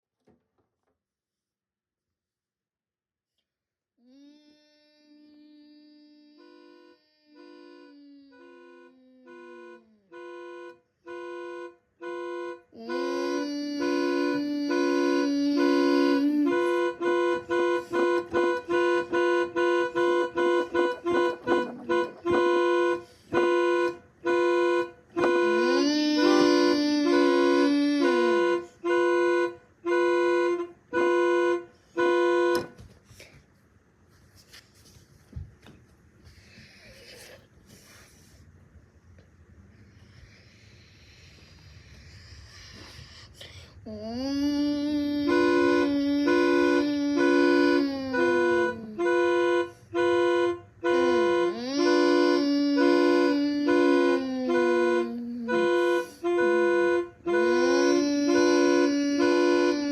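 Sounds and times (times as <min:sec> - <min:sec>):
long held alarm tone: 0:04.6 - 0:32.7, 0:44.8 - 0:59.9
electronic alarm tone beeping: 0:14.8 - 0:32.6.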